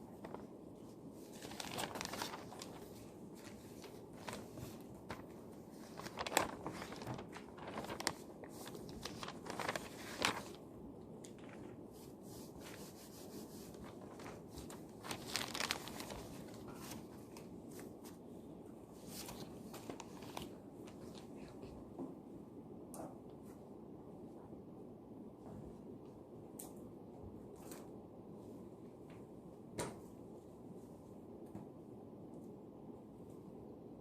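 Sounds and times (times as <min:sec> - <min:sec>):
low room hum: 0:00.0 - 0:34.0
paper rustling: 0:00.1 - 0:18.2, 0:19.0 - 0:21.7.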